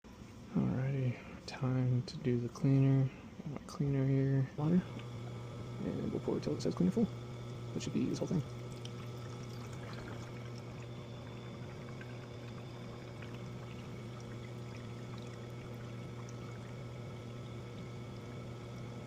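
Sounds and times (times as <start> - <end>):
machine low hum: 0.0 - 19.0
liquid pouring into trough: 4.9 - 19.0.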